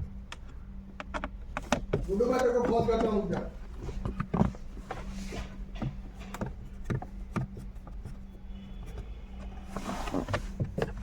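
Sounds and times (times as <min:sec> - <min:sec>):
steady low hum: 0:00.0 - 0:11.0
clicks and knocks of handled parts: 0:00.2 - 0:08.2.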